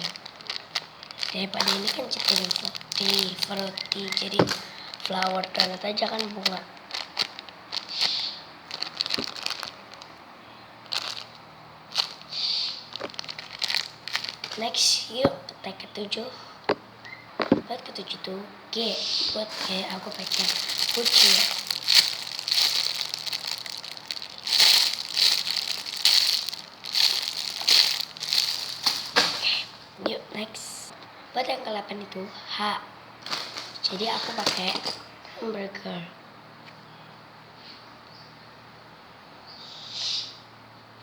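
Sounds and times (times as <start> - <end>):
plastic packaging crinkling: 0.0 - 10.2, 10.8 - 15.4, 17.4 - 18.2, 19.3 - 29.8, 33.2 - 35.1.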